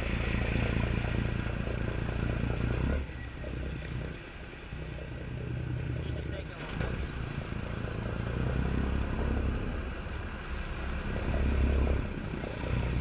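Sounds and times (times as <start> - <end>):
boat engine running: 0.0 - 13.0
rushing water noise: 0.0 - 13.0.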